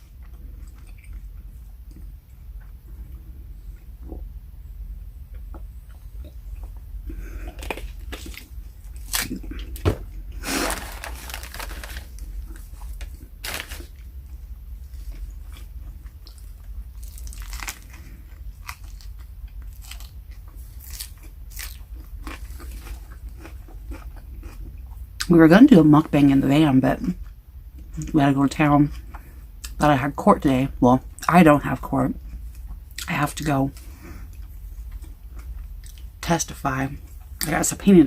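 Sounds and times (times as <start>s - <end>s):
chewing and crunching sandwich: 0.0s - 4.2s, 5.3s - 25.3s, 32.2s - 36.2s
steady low hum: 0.0s - 38.0s.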